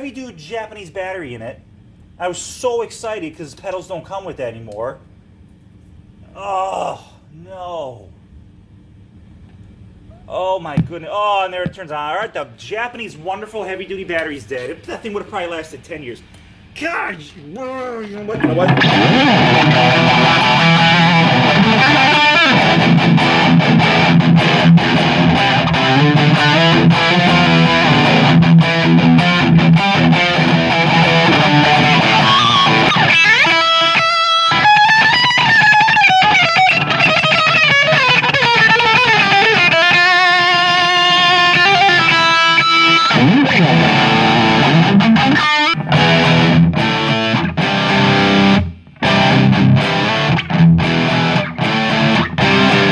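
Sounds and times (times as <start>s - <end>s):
distorted electric guitar: 18.3s - 52.9s.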